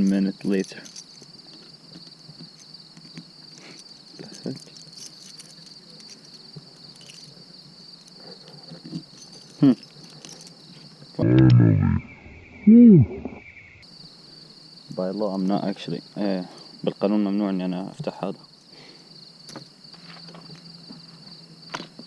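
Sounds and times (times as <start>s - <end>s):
crickets chirping: 0.0s - 22.0s.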